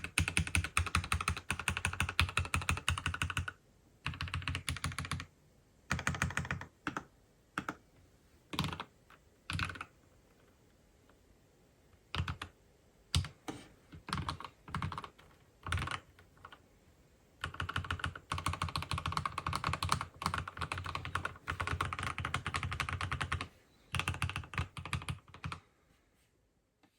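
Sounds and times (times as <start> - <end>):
mechanical keyboard typing: 0.0 - 5.3, 5.9 - 7.8, 8.5 - 8.9, 9.5 - 9.9, 12.0 - 13.4, 14.0 - 16.6, 17.4 - 25.6.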